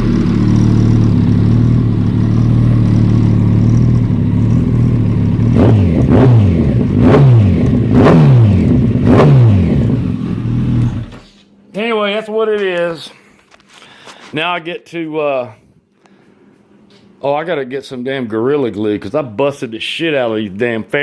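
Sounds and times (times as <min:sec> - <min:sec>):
motorcycle idling and revving: 0:00.0 - 0:11.3.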